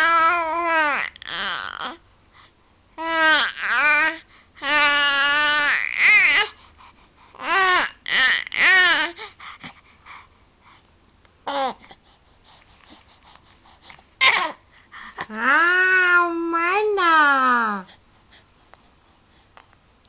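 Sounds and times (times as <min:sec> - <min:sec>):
baby babbling and squealing: 0:00.0 - 0:02.0, 0:03.0 - 0:06.5, 0:07.4 - 0:09.2.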